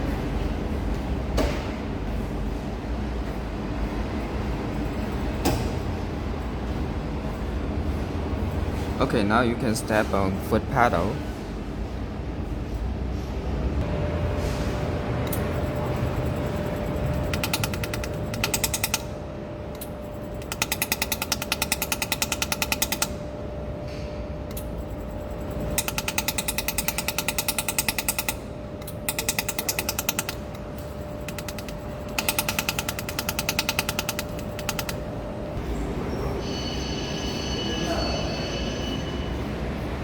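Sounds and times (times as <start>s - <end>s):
laser welder rapid clicks: 16.6s - 19.0s.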